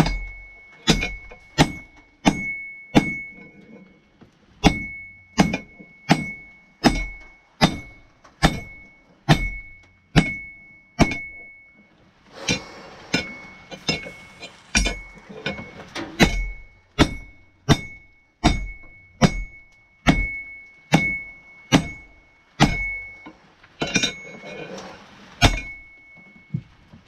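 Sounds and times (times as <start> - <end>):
anvil ringing: 0.0 - 3.6, 4.6 - 11.7, 12.4 - 24.4, 25.4 - 26.4
rushing hiss: 12.2 - 15.3
hammer blows on hot steel: 12.3 - 24.3.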